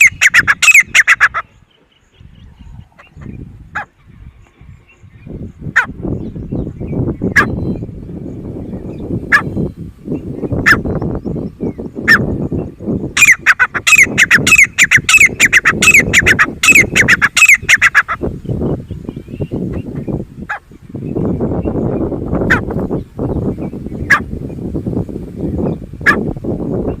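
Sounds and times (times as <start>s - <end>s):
francolin calling: 0.0s - 4.1s, 8.8s - 24.3s.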